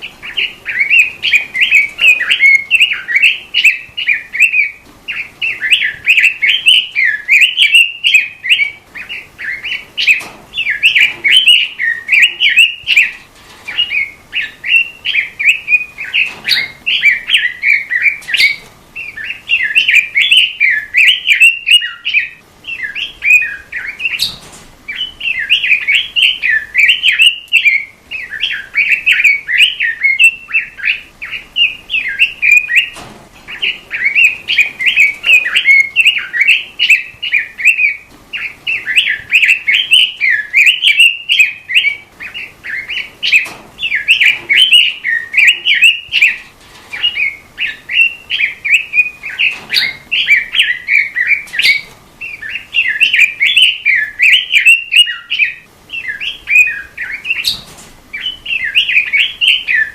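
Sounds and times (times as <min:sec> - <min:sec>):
bird singing chattering notes: 0:00.0 - 0:59.9.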